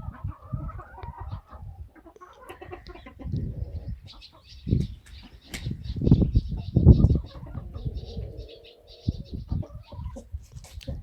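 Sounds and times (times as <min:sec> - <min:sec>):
hens clucking: 0:00.0 - 0:11.0.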